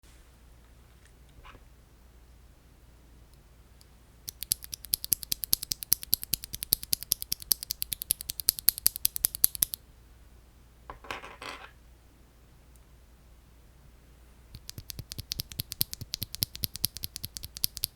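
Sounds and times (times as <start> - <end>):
mechanical keyboard typing: 4.3 - 9.8, 14.6 - 17.9.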